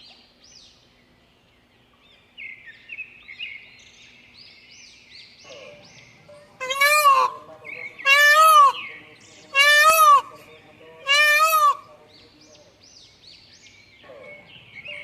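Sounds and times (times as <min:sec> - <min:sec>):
small birds chirping: 0:00.0 - 0:15.0
loud animal call: 0:06.6 - 0:08.9, 0:09.5 - 0:12.0.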